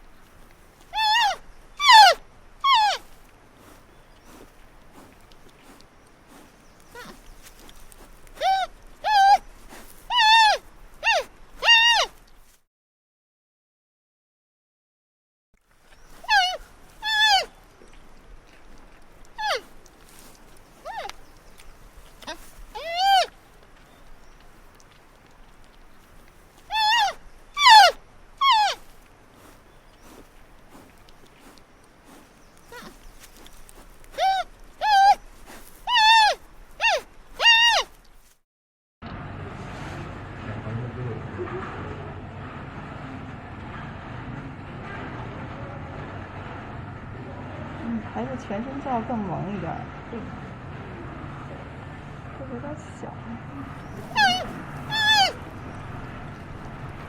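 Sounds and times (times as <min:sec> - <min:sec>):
animal calling: 0:00.0 - 0:12.5, 0:15.9 - 0:38.4, 0:53.5 - 0:57.0
animal high cries: 0:00.9 - 0:03.1, 0:06.9 - 0:07.2, 0:08.4 - 0:09.5, 0:10.1 - 0:12.2, 0:16.1 - 0:17.6, 0:19.4 - 0:19.7, 0:20.8 - 0:21.2, 0:22.2 - 0:23.4, 0:26.7 - 0:30.2, 0:32.7 - 0:33.0, 0:34.1 - 0:38.0, 0:53.8 - 0:55.6.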